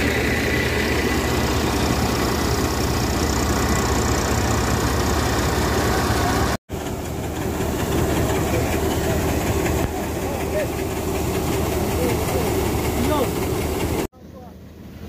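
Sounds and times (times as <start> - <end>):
engine running steadily: 0.0 - 15.0.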